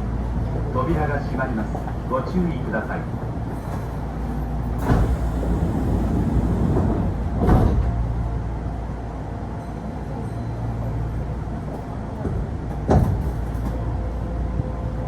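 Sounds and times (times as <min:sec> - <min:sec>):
low hum of standing train: 0:00.0 - 0:15.0
train sliding doors closing: 0:03.3 - 0:08.5, 0:11.6 - 0:14.2.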